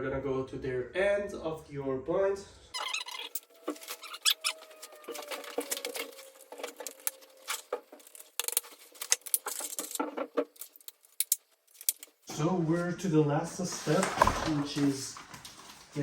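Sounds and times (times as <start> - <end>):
plastic hardware clicking and rattling: 5.1 - 12.2.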